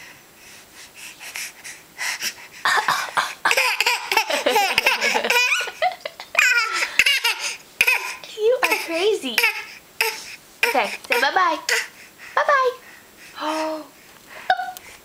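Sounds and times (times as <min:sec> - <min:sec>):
baby laughing: 0:02.7 - 0:09.6.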